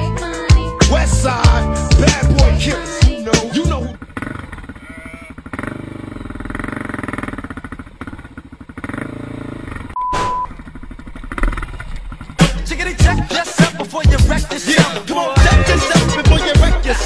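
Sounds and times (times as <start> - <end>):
motorcycle engine running: 0.0 - 17.0
short steady beep: 10.0 - 10.5.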